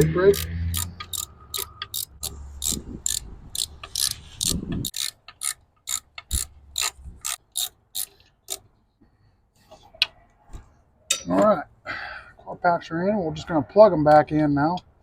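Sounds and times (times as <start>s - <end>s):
ratchet wrench clicking: 0.0s - 8.6s.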